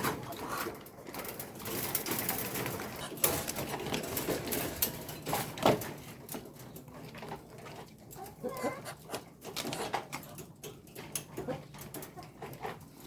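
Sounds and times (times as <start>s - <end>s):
chickens clucking: 0.0s - 1.6s, 5.5s - 13.0s.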